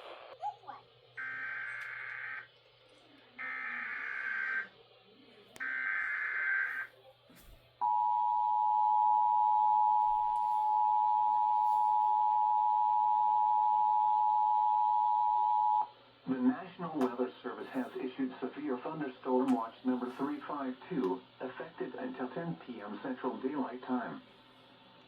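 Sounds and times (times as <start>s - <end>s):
data bursts: 3.4s - 4.7s, 5.6s - 6.9s.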